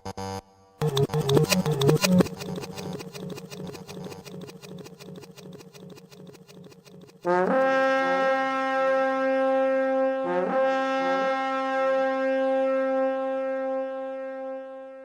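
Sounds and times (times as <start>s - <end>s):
pulsing sound effect: 0.8s - 8.3s
brassy horn blast effect: 7.2s - 13.1s.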